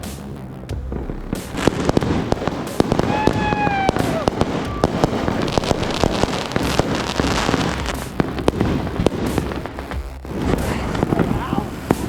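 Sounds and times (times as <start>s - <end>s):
fireworks bangs and pops: 0.0s - 12.0s
fireworks crackling: 0.0s - 12.0s.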